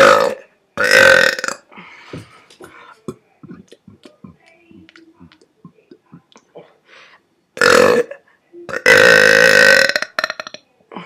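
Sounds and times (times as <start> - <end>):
loud burp: 0.0 - 1.7, 7.6 - 10.6
soft clicks and mouth noises: 2.5 - 6.5.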